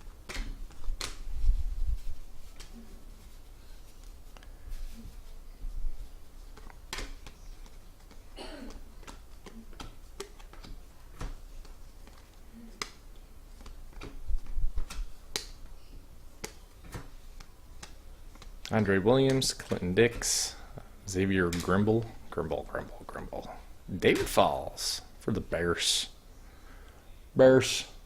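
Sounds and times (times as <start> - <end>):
trading cards flipped through: 0.2 - 1.3.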